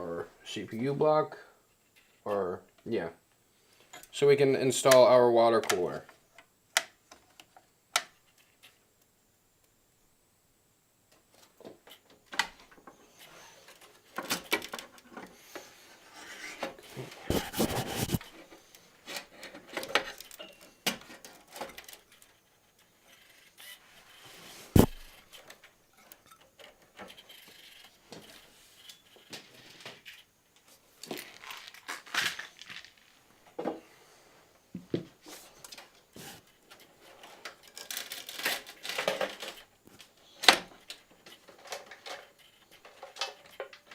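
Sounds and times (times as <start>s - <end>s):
hands clicking and scraping parts: 13.6s - 33.1s
rustling scrape: 15.4s - 19.2s, 23.0s - 25.2s
sharp knock: 24.8s - 25.1s.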